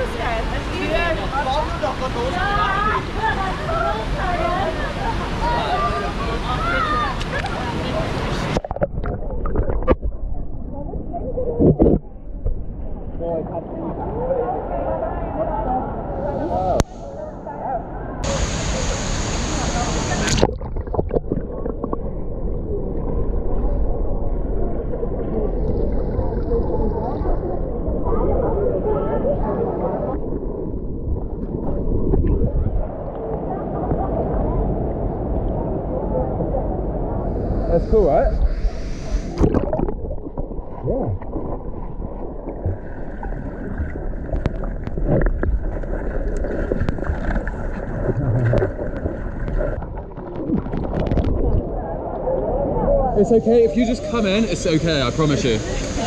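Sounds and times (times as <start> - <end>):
muffled underwater water rumble: 0.0 - 56.0
clicks and bubbles: 8.4 - 10.7, 11.4 - 13.2, 20.2 - 23.3, 30.1 - 34.0, 39.2 - 52.2
wind buffeting microphone: 28.1 - 33.0.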